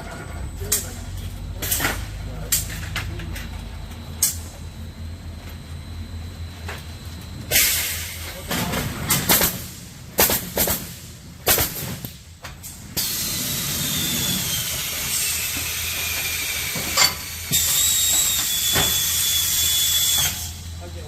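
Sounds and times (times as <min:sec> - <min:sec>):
machine low hum: 0:00.0 - 0:18.6.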